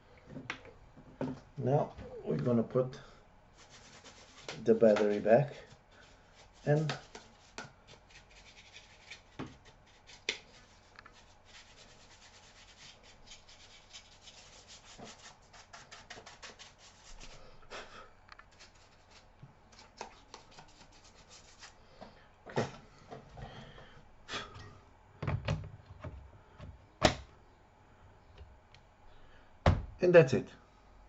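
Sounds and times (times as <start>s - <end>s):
hands rubbing plastic case: 3.6s - 17.3s.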